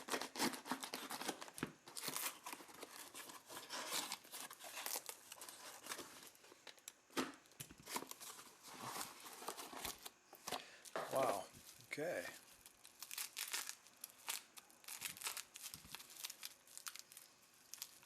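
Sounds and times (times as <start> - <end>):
packing material tearing and crumpling: 0.0 - 7.0, 7.7 - 10.2, 11.1 - 18.0.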